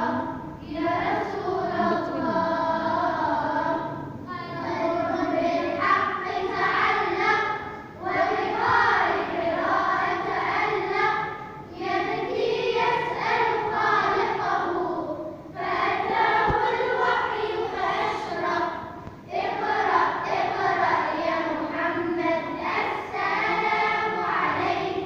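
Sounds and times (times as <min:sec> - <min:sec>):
voices singing long phrases: 0:00.0 - 0:25.0.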